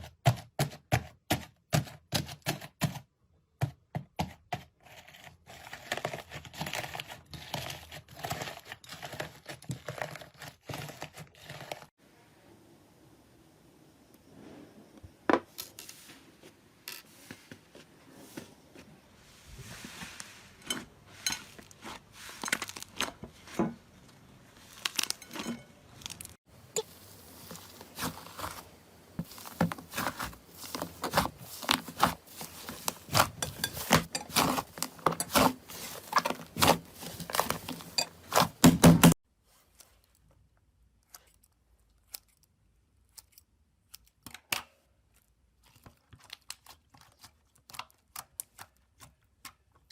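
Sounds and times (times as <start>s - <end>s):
hands squishing slime: 27.2s - 39.0s.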